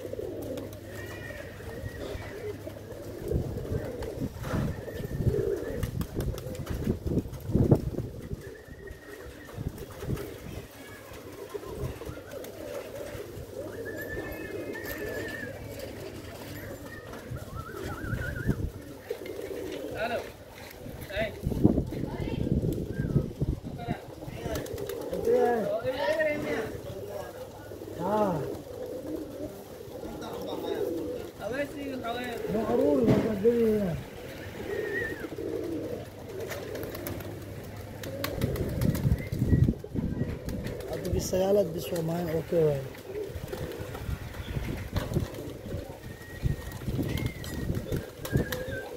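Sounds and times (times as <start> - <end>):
pigeons cooing: 0.0 - 48.9
thin wavering whistle: 16.9 - 18.6.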